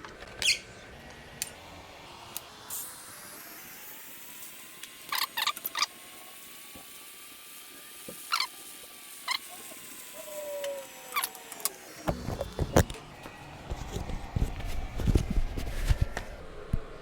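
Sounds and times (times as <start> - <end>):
welding arc hiss: 0.0 - 17.0.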